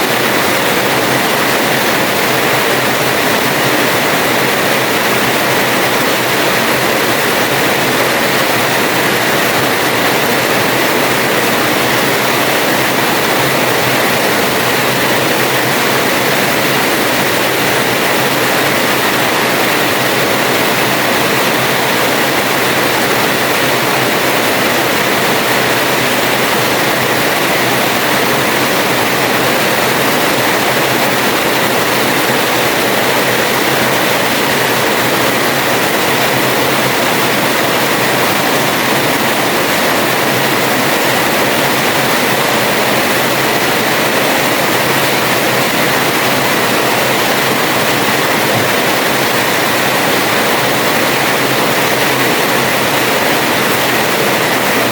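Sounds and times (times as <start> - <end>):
heavy rain downpour: 0.0 - 54.9.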